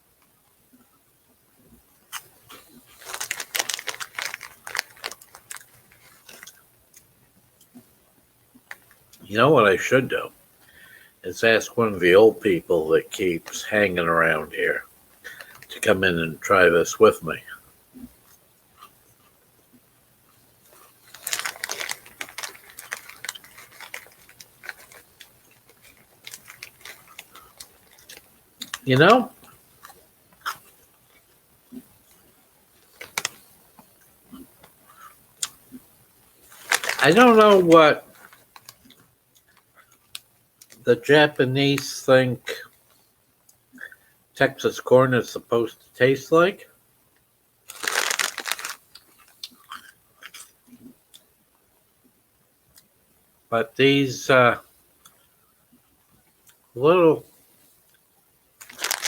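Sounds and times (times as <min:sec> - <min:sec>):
crunching and chewing cheese balls: 0:02.1 - 0:07.8, 0:20.6 - 0:40.8, 0:47.7 - 0:51.4, 0:58.6 - 0:59.0.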